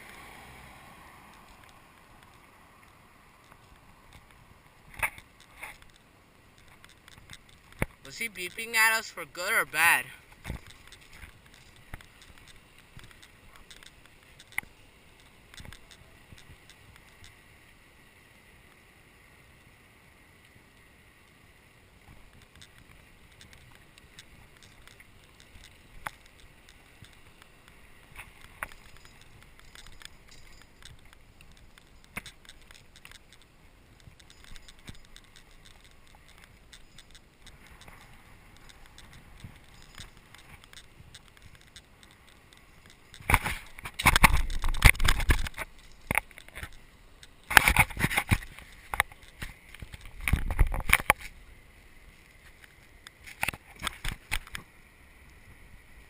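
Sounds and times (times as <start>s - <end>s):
faint steady hiss: 0.0s - 56.0s
bicycle clicks and knocks: 1.2s - 8.7s, 10.3s - 17.4s, 22.1s - 51.4s.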